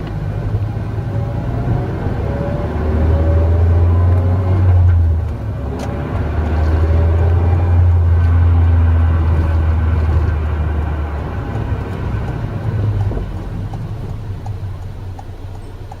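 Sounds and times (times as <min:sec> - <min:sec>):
car engine drone from inside: 0:00.0 - 0:16.0.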